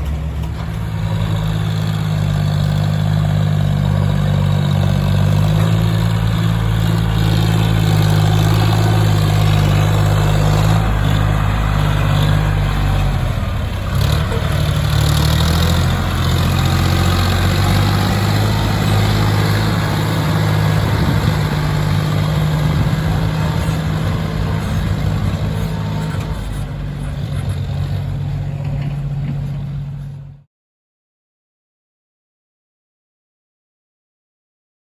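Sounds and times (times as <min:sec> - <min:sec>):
heavy diesel engine running: 0:00.0 - 0:30.4.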